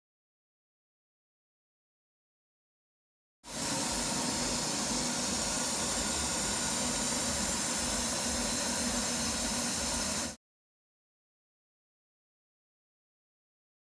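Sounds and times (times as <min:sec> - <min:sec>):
machine shop machinery humming: 0:03.5 - 0:10.4
strong hiss: 0:03.5 - 0:10.4.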